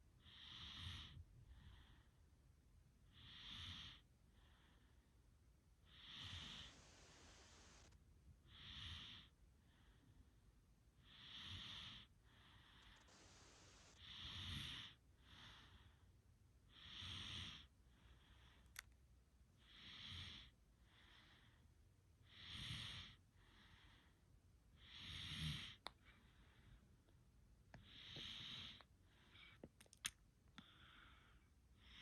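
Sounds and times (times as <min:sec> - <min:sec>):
slow snoring breaths: 0:00.2 - 0:02.1, 0:03.1 - 0:05.0, 0:05.8 - 0:10.2, 0:11.0 - 0:16.1, 0:16.7 - 0:18.8, 0:19.6 - 0:21.6, 0:22.2 - 0:24.2, 0:24.8 - 0:26.8, 0:27.7 - 0:29.7, 0:30.6 - 0:32.0.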